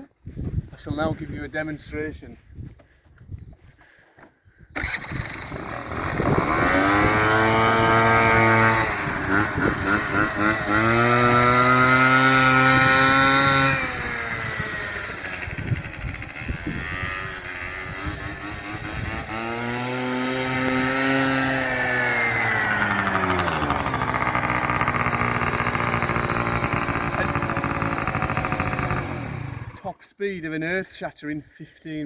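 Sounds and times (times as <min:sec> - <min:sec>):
scooter engine revving: 0:04.8 - 0:29.8.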